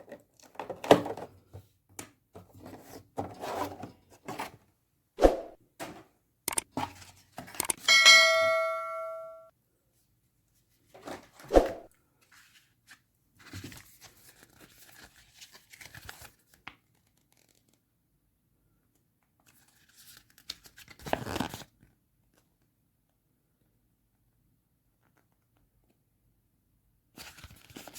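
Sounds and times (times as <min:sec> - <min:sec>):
bright ringing ding: 0:07.8 - 0:09.5.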